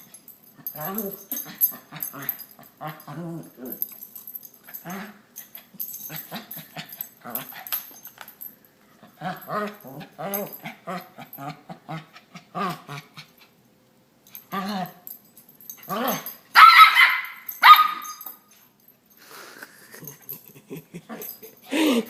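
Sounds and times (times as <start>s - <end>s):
dogs yipping and whining: 15.7s - 18.5s.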